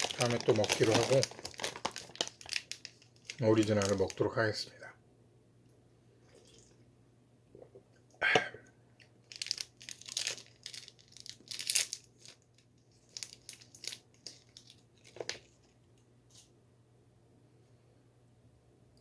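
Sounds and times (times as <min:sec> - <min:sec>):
wrapper tearing snap: 0:00.0 - 0:04.0, 0:09.3 - 0:15.5
plastic wrapper crinkling: 0:00.0 - 0:04.4, 0:09.2 - 0:16.4.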